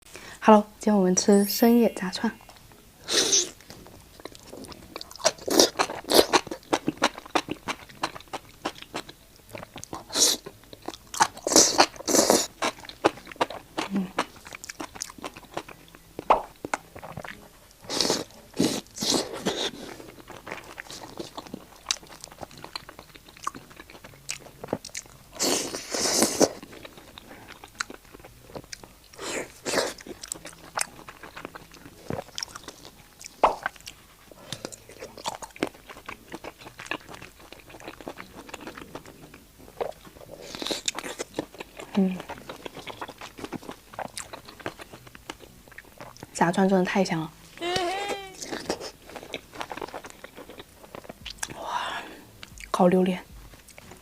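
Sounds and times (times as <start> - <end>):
crunchy biting and chewing: 3.1 - 46.3, 48.4 - 51.6.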